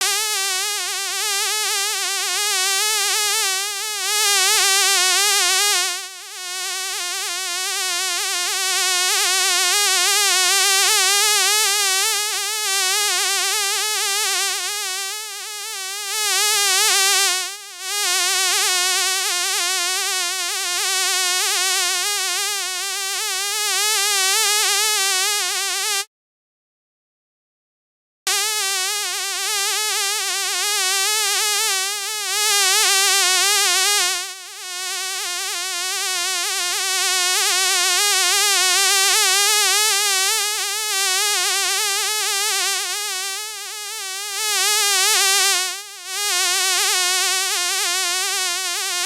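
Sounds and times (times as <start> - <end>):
fly buzzing: 20.5 - 26.1, 28.3 - 37.5.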